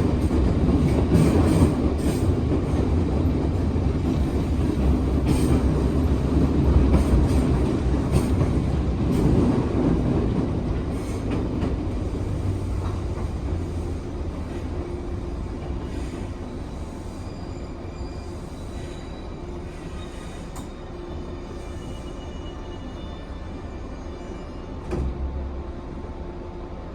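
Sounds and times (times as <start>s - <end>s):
rail-joint clicks: 0.0s - 16.3s, 20.0s - 20.9s, 24.8s - 25.3s
train wheels rumbling on rail: 0.0s - 26.9s
faint thin squeals: 15.9s - 24.8s.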